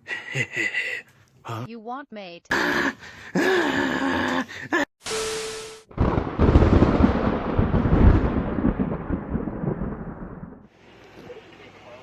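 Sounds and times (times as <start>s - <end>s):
deep rumbling boom: 5.9s - 10.6s.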